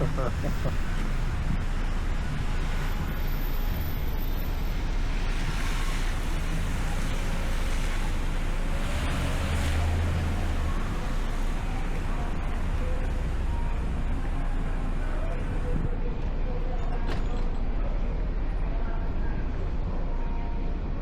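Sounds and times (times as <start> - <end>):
passing traffic rumble: 0.0 - 21.0
vehicle passing by: 5.2 - 13.5.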